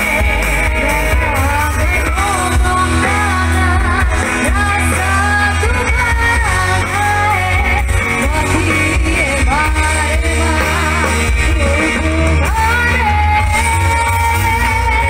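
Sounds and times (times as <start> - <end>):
heavy bass line: 0.0 - 15.0
pop music with singing: 0.0 - 15.0.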